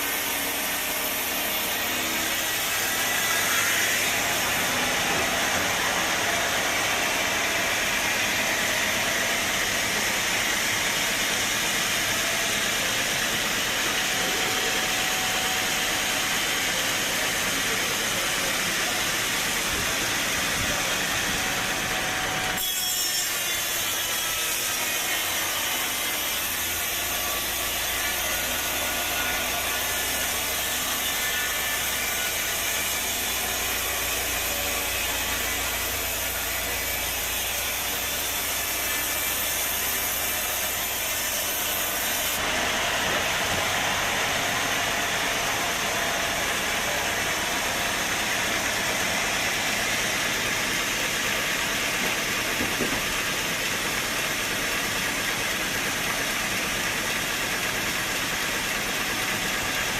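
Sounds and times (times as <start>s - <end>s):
mill machinery running: 0.0s - 59.9s
saw cutting through log: 0.0s - 59.9s.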